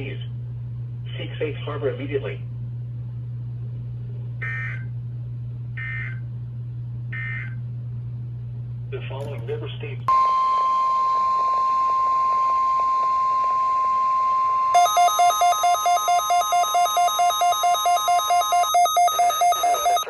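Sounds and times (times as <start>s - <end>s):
steady high alarm tone: 10.1s - 20.0s
rapid electronic alert beeps: 14.3s - 20.0s.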